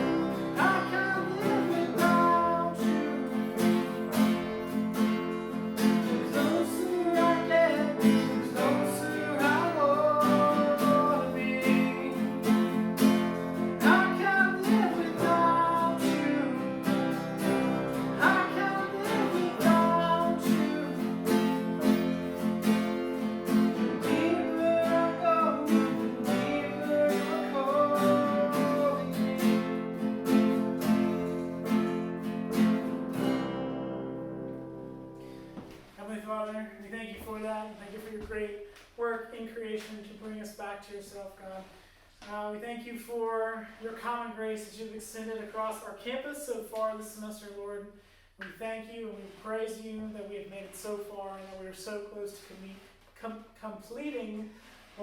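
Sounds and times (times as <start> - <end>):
person singing: 0.0 - 4.0, 5.8 - 22.3, 23.4 - 29.8
acoustic guitar strumming: 0.0 - 36.0.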